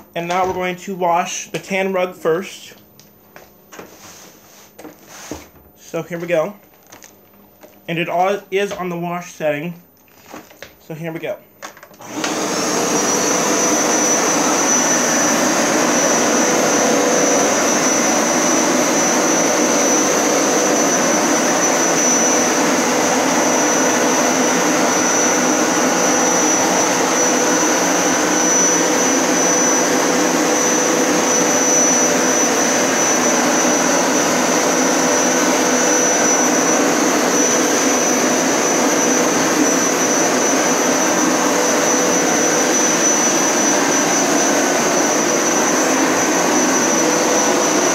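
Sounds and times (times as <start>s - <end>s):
carpet cleaner motor whining: 12.0s - 47.9s.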